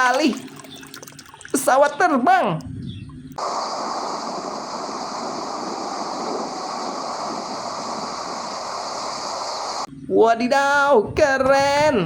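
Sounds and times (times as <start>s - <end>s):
running water splashing: 0.0s - 1.8s.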